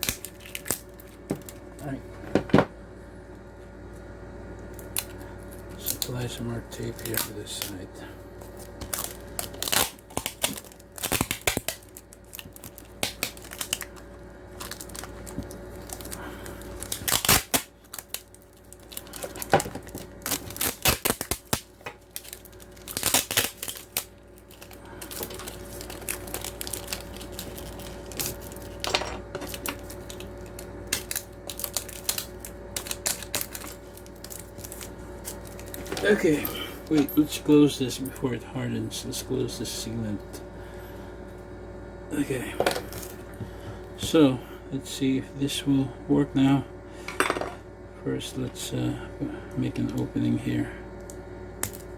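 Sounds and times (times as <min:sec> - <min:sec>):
adhesive tape ripping: 0:00.0 - 0:01.6, 0:08.5 - 0:14.0, 0:14.6 - 0:28.7, 0:29.5 - 0:35.9
faint steady hum: 0:00.0 - 0:51.9.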